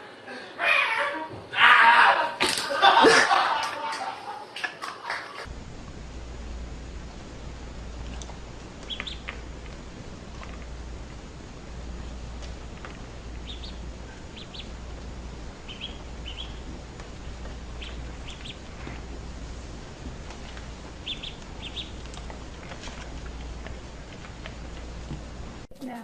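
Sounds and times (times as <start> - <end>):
steady low hum: 5.4 - 26.0
bird chirping: 8.8 - 9.5, 13.3 - 15.0, 15.6 - 19.0, 20.4 - 23.2.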